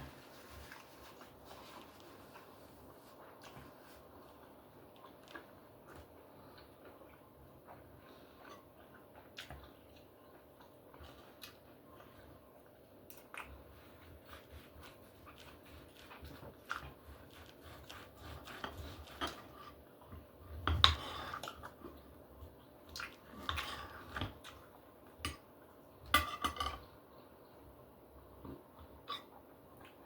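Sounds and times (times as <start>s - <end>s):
chewing and mouth noises: 0.6s - 20.4s, 21.3s - 24.8s.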